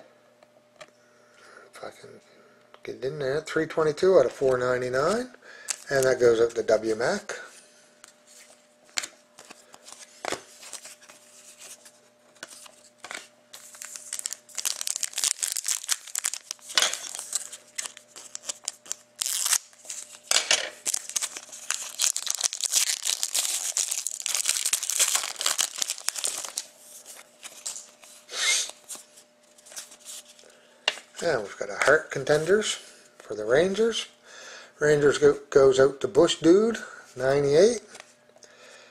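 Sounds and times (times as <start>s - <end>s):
card pack wrapper crackling: 5.6s - 6.2s, 9.0s - 30.3s.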